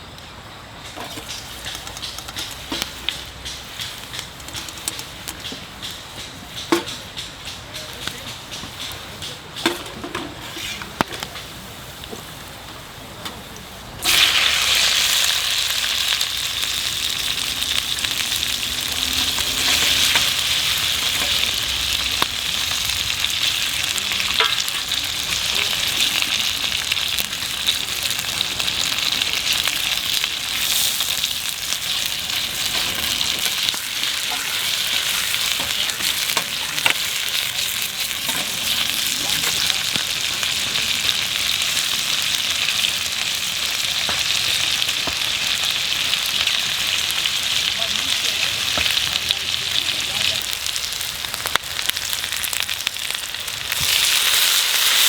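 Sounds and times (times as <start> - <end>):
food sizzling in a pan: 14.0 - 55.0.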